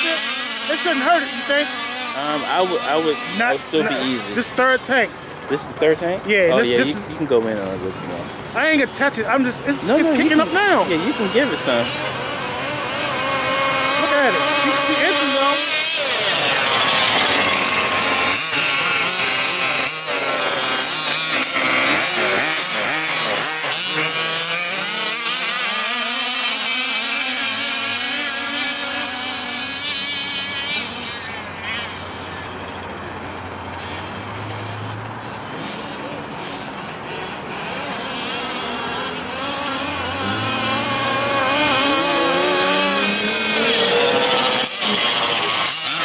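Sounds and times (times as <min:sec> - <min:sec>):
model car engine revving: 0:00.0 - 0:46.0.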